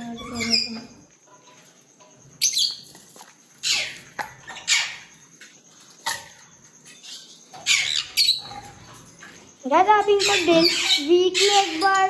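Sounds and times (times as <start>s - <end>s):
lovebirds shrill calls: 2.4s - 3.0s, 3.6s - 5.2s, 6.0s - 8.7s, 9.8s - 12.0s.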